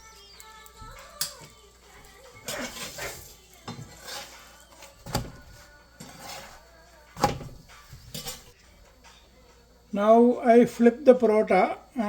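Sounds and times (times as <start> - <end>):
metal utensil scraping griddle: 1.0 - 8.6.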